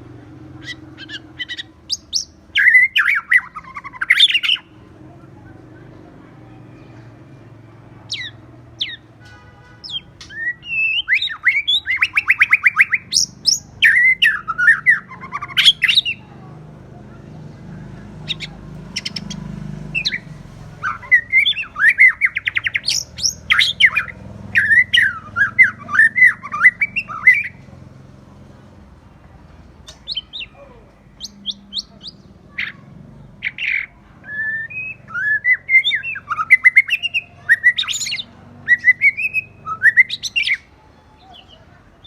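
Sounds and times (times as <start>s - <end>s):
bird singing whistled phrases: 0.6s - 4.7s, 9.8s - 16.2s, 20.0s - 27.6s, 33.4s - 41.6s.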